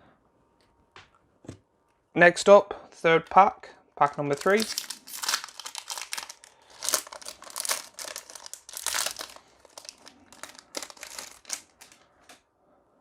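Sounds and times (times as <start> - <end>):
foil wrapper crinkling and tearing: 4.2 - 12.0.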